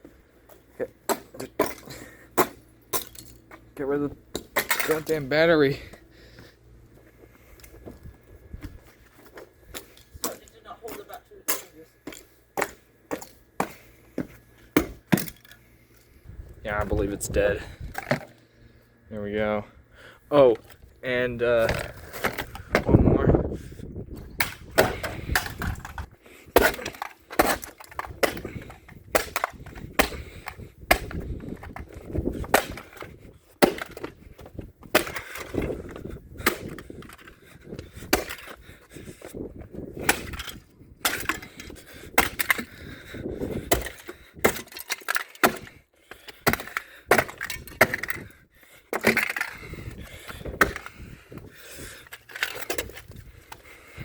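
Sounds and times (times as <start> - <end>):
hard blows smashing something: 24.4 - 37.3, 38.0 - 38.6, 40.0 - 42.8, 43.5 - 48.3, 48.9 - 51.0
breaking and cracking: 43.7 - 48.3.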